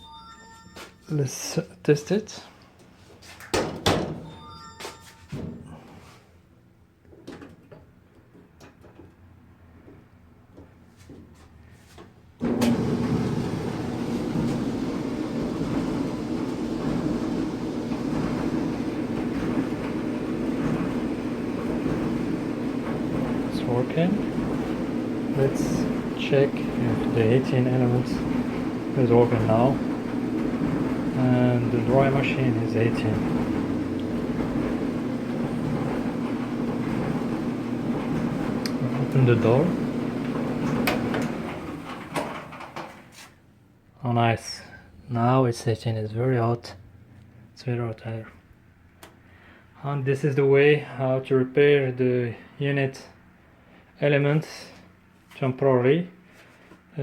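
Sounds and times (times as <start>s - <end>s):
clothes dryer humming: 0.0s - 6.3s, 7.0s - 43.4s.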